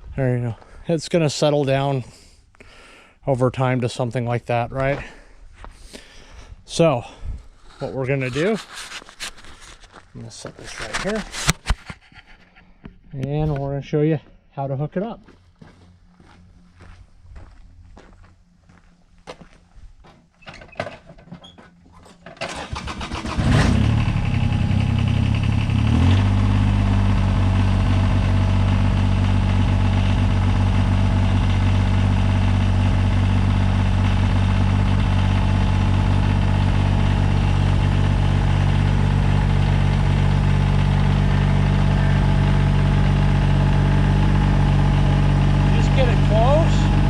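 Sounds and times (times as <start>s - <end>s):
diesel engine starting and idling: 21.4s - 47.0s.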